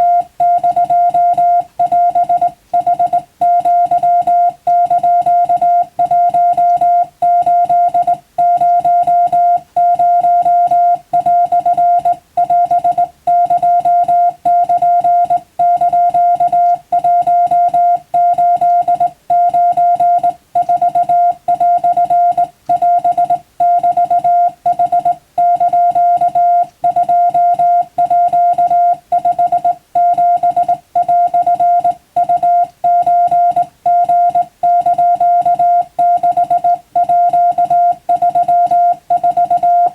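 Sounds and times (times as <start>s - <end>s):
morse code tone: 0.0s - 39.9s.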